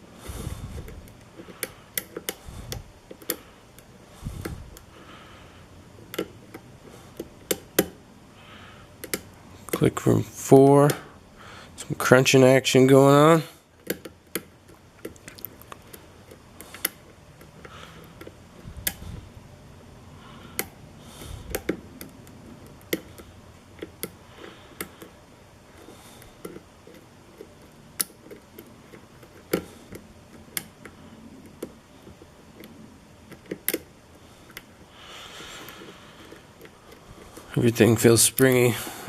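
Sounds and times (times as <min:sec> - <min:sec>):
lock pick clicking metallic: 0:13.8 - 0:19.0, 0:26.4 - 0:33.9.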